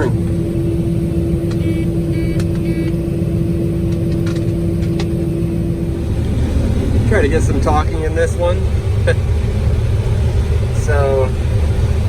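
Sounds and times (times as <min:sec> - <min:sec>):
combine harvester droning: 0:05.8 - 0:12.0.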